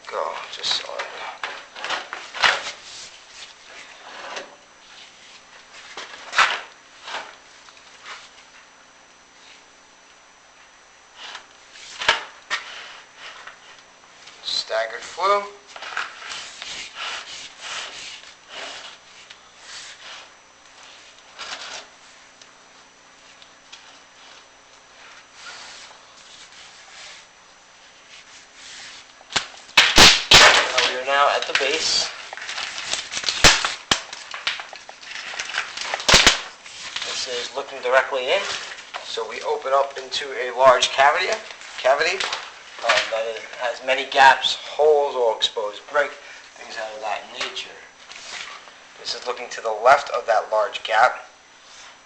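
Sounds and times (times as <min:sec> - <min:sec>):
cable scraping inside flue: 0:14.9 - 0:39.5.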